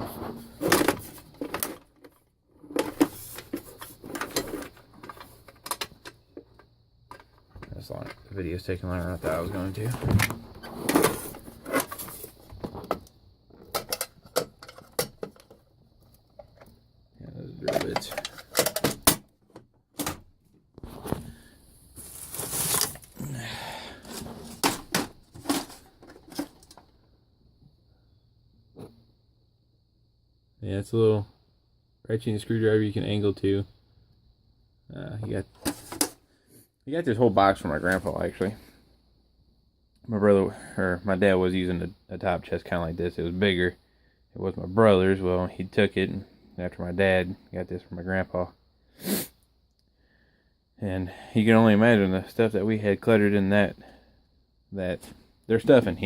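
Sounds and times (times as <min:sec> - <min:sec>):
tools rustling and clattering: 0:00.0 - 0:08.3, 0:09.0 - 0:16.7, 0:17.6 - 0:20.2, 0:22.0 - 0:23.2, 0:24.0 - 0:26.9, 0:35.6 - 0:36.2.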